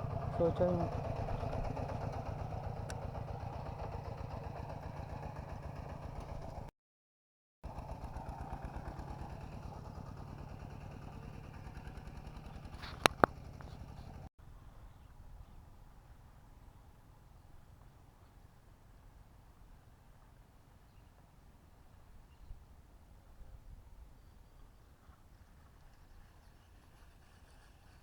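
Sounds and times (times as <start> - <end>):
small engine running: 0.0 - 6.7, 7.6 - 14.3, 25.4 - 28.0.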